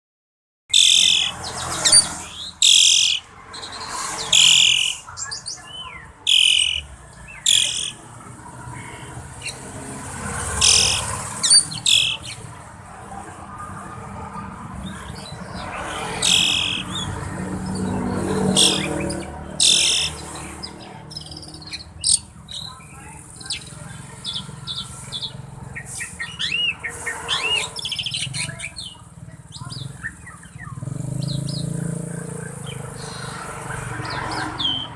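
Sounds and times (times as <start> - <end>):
looping bird whistles: 0.7 - 8.1, 16.2 - 17.1, 18.5 - 20.3
starling harsh rasping calls: 0.7 - 34.9
bird whistled notes: 6.3 - 8.0.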